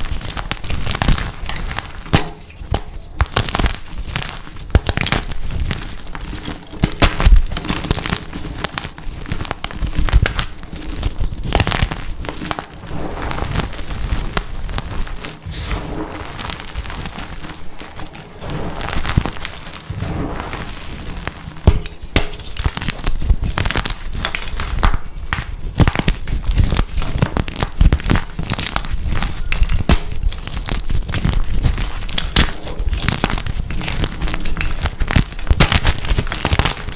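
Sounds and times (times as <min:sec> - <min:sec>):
chalk blocks crunching and crumbling: 0:21.6 - 0:36.9.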